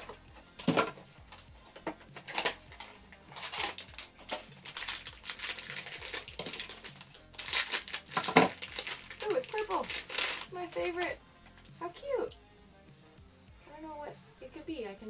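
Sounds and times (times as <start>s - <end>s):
packaging crinkling and rustling: 2.2s - 11.7s.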